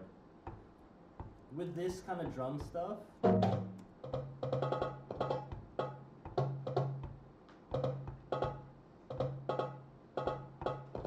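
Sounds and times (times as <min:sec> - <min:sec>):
hand-drum electronic beat: 0:02.6 - 0:11.0.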